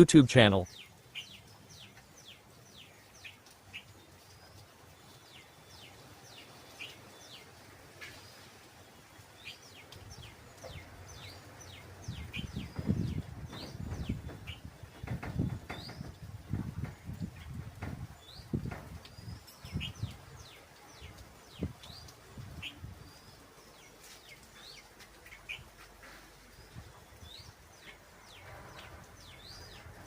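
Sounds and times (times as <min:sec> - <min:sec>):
small birds chirping: 0:00.0 - 0:30.0
low rumbling and thudding: 0:12.5 - 0:18.9.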